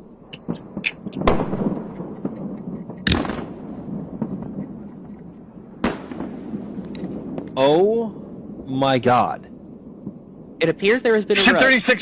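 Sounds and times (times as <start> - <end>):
crackling rumble: 0.0 - 12.0
distant explosion bangs: 0.2 - 8.8.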